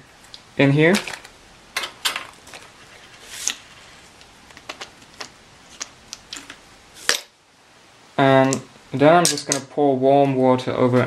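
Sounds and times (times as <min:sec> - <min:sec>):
small hard objects rustling: 0:00.8 - 0:07.3.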